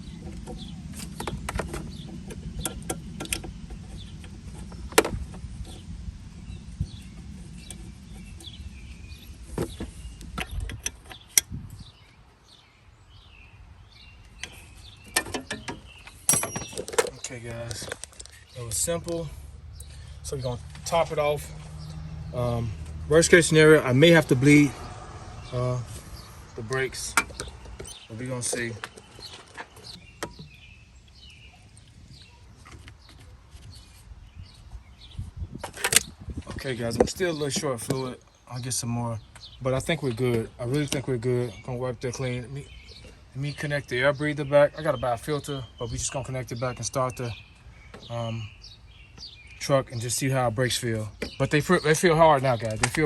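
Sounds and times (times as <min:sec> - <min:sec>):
birds chirping: 0:00.0 - 0:53.0
hand tools clicking on metal: 0:16.3 - 0:18.3.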